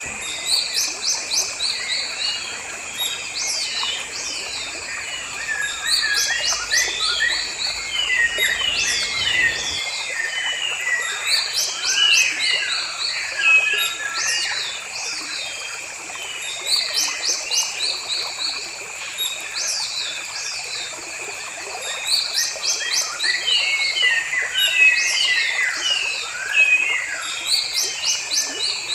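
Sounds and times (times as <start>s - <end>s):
songbirds chirping: 0.0s - 12.6s.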